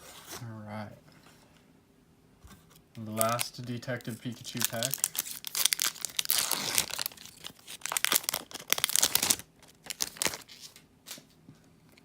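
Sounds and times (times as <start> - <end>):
foil wrapper crinkling and tearing: 3.1 - 10.8.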